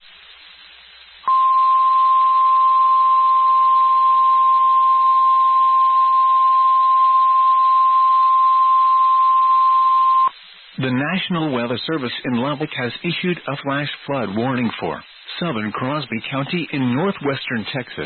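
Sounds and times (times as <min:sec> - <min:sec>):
faint hiss: 0:00.0 - 0:04.3, 0:10.3 - 0:18.0.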